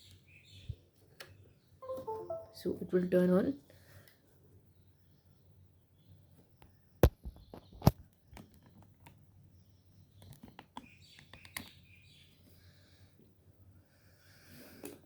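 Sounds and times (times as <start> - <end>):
faint high chirps: 1.8 - 2.9.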